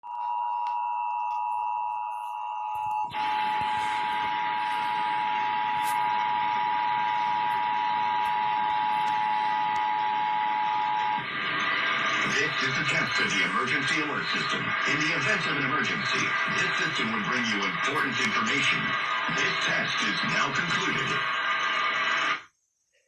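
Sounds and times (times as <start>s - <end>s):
two-tone alarm tone: 0.0s - 22.4s.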